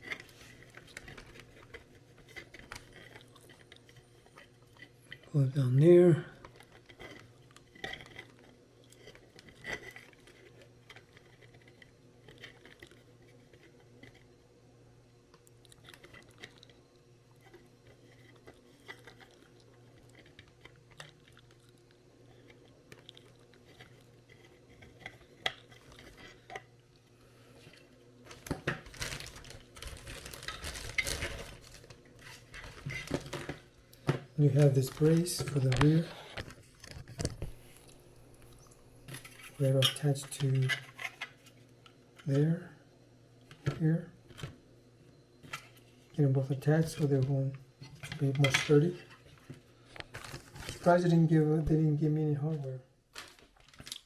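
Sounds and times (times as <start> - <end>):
plastic rustling and crinkling: 0.0 - 14.4, 15.5 - 26.7, 27.4 - 42.5, 45.4 - 54.0.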